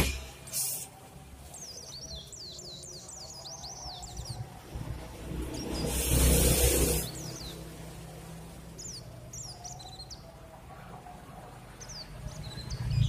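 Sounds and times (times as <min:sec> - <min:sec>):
birds chirping: 0:00.0 - 0:13.0
loud rush of noise: 0:04.2 - 0:08.8.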